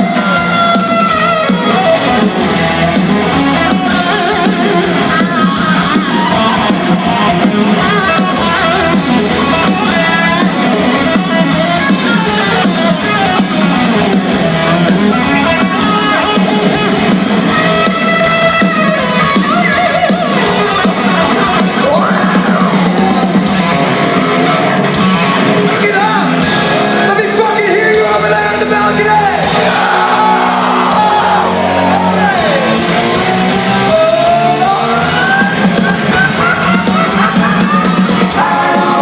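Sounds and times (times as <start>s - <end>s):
distorted electric guitars: 0.0s - 39.0s
drums and bass: 0.0s - 39.0s
singing and shouted vocals: 24.5s - 39.0s.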